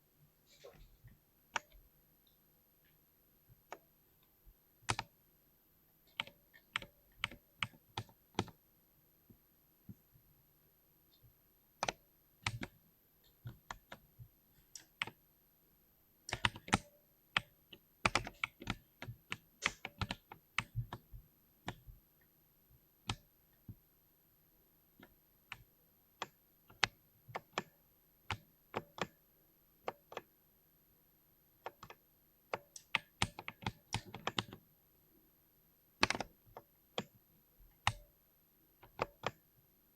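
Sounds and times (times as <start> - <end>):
mechanical keyboard typing: 16.3 - 21.0, 31.6 - 34.6, 36.0 - 37.1, 38.8 - 39.4.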